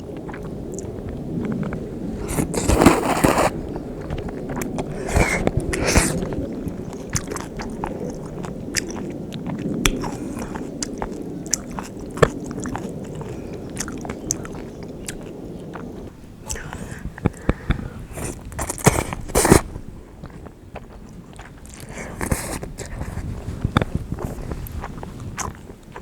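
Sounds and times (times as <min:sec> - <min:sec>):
chewing and biting noodles: 0:00.0 - 0:26.0.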